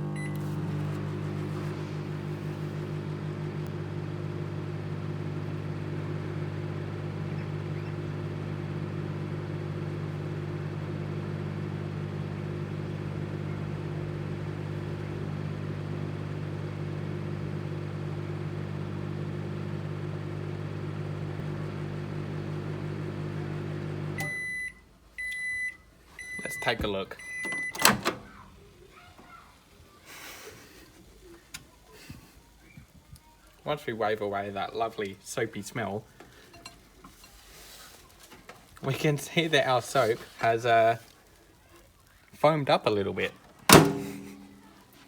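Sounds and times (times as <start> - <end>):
microwave oven humming: 0.0 - 29.5, 43.5 - 45.0.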